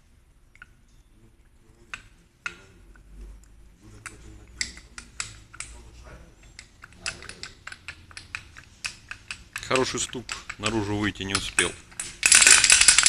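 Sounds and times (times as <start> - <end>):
clicks and taps of hard objects: 4.0 - 5.8, 6.4 - 13.0.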